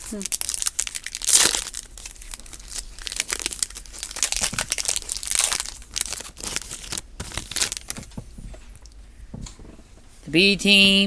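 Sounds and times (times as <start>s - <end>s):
foil wrapper crinkling and tearing: 0.0s - 8.2s.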